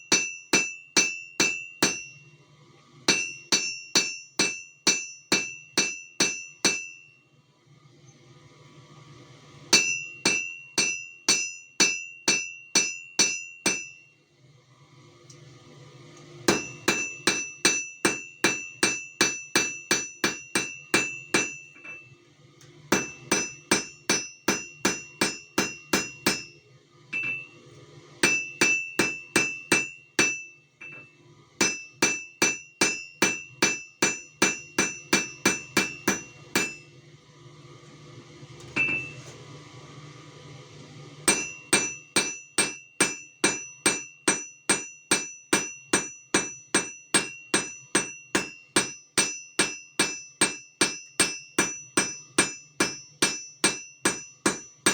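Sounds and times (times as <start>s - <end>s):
hammer striking steel on anvil: 0.0s - 2.2s, 3.1s - 7.2s, 9.7s - 14.0s, 16.5s - 22.1s, 22.9s - 27.6s, 28.2s - 37.0s, 38.8s - 39.2s, 41.3s - 54.9s.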